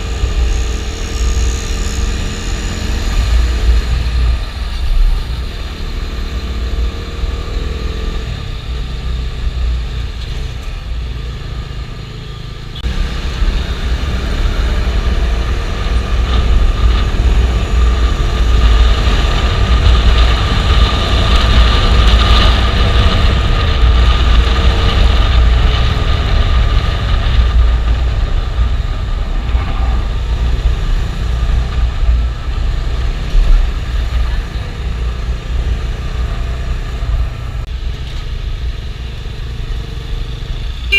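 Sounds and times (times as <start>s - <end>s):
motorcycle engine running: 0.0s - 40.9s
wind rumble on microphone: 12.8s - 38.9s.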